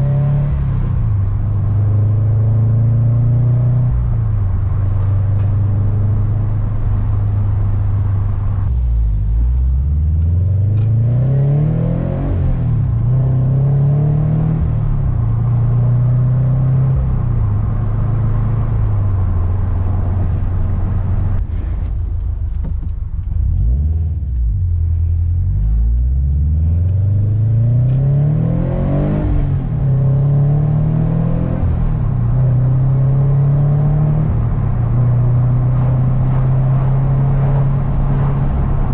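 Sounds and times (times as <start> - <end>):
sports car engine accelerating: 0.0 - 38.9.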